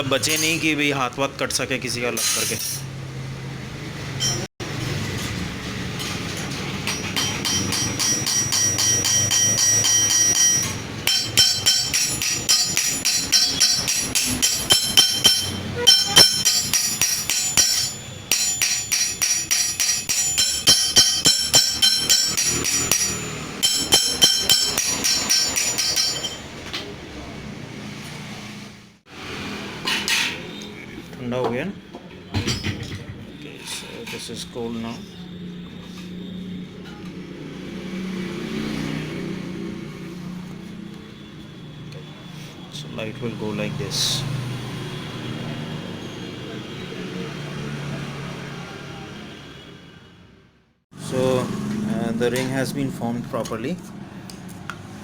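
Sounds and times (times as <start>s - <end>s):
hammer blows on metal ring: 7.2s - 26.4s.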